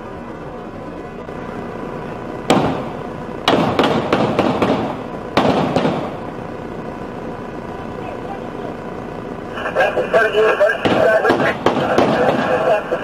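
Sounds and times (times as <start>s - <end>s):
gunshots with echo: 2.5s - 6.2s, 10.8s - 12.8s.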